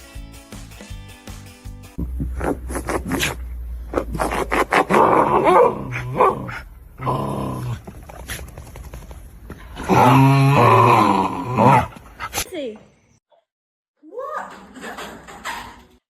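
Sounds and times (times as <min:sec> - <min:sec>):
dog vocalizing: 0:02.0 - 0:06.7
sharp clicks and knocks: 0:14.6 - 0:16.0.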